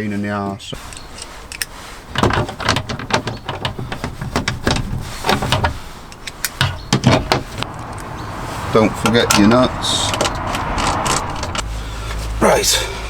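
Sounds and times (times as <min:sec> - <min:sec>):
plastic trim clicking and knocking: 0:02.1 - 0:07.6.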